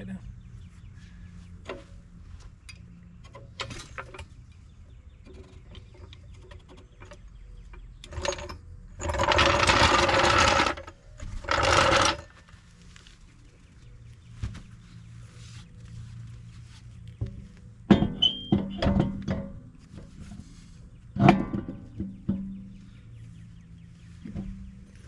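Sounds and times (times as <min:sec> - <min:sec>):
tool handling clicks and knocks: 0:01.6 - 0:04.6, 0:17.1 - 0:22.8
impact wrench running: 0:09.0 - 0:12.3.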